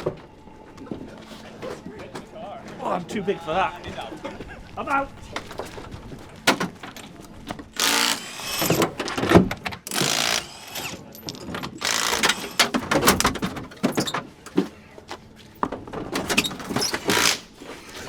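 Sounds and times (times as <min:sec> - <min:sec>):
impact wrench rattling: 0:07.8 - 0:09.0, 0:09.9 - 0:13.3.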